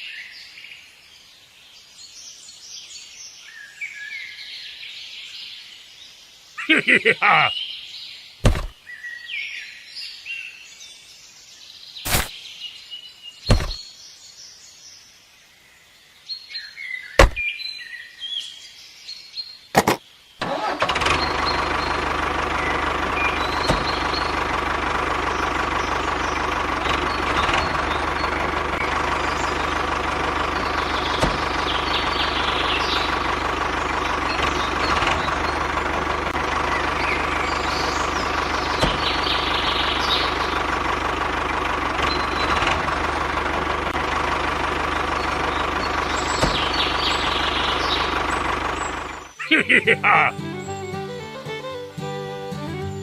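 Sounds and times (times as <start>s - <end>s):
birds chirping: 6.4s - 9.2s, 11.9s - 14.4s, 21.1s - 53.0s
sharp knocks: 8.4s - 8.7s, 13.5s - 13.8s, 17.2s - 17.4s
small engine idling: 13.5s - 13.8s, 20.4s - 53.0s.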